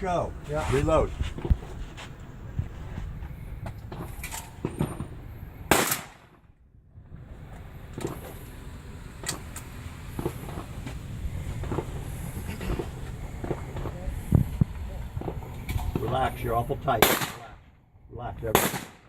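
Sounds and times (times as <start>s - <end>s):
outdoor background noise: 0.0s - 19.0s
shotgun shot: 5.7s - 6.4s, 16.9s - 17.5s, 18.5s - 19.0s.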